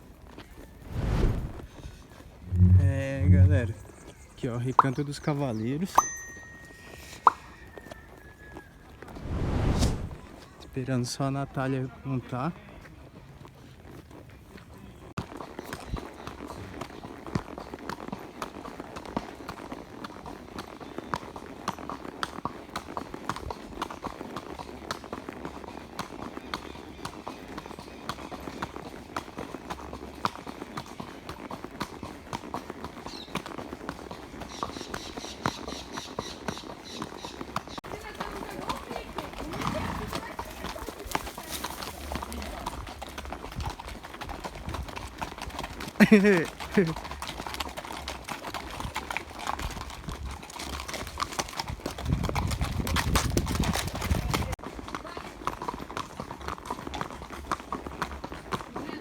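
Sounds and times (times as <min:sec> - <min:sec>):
horse hooves clip-clopping: 0:00.0 - 0:09.3, 0:09.9 - 0:59.0
low rumble: 0:00.8 - 0:01.8, 0:02.4 - 0:03.9, 0:09.1 - 0:10.3.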